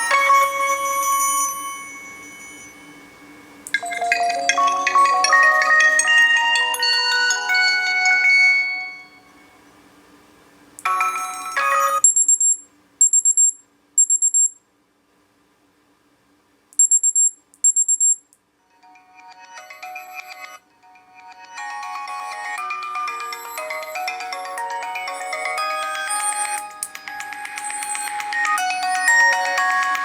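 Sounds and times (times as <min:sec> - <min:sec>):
short chime: 0:00.0 - 0:06.0
high-pitched electronic beeping: 0:03.7 - 0:07.4, 0:10.8 - 0:14.6, 0:16.8 - 0:18.2, 0:25.1 - 0:30.0
melodic phone alarm tone: 0:03.7 - 0:09.4, 0:10.8 - 0:12.6, 0:21.4 - 0:30.0.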